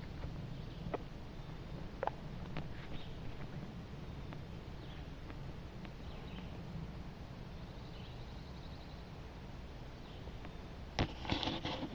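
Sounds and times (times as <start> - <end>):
faint bird chirps: 0.0 - 5.2, 5.8 - 6.6, 7.5 - 9.2
low outdoor rumble: 0.0 - 11.9.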